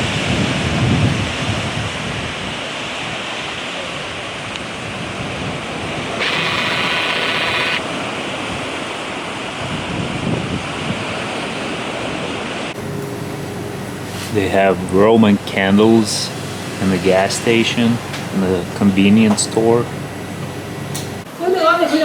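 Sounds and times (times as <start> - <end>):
wind blowing across microphone: 0.0 - 12.8
high buzzing tone: 6.2 - 7.8.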